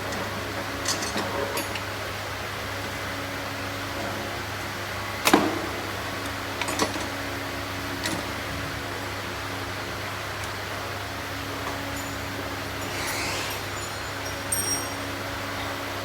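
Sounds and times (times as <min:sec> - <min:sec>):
hand tools clicking and knocking: 0:12.8 - 0:15.1.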